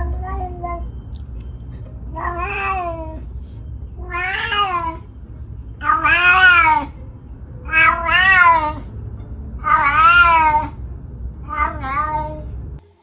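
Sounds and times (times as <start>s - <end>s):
cat meowing: 0.0s - 1.0s, 2.1s - 3.3s, 4.0s - 5.1s, 5.8s - 7.0s, 7.6s - 8.9s, 9.6s - 10.8s, 11.4s - 12.6s.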